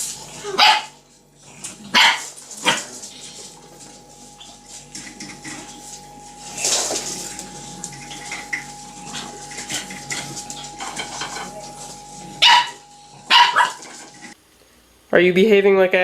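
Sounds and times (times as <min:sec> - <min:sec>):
dog barking sharply: 0:00.6 - 0:01.0, 0:02.0 - 0:02.3, 0:12.4 - 0:13.8.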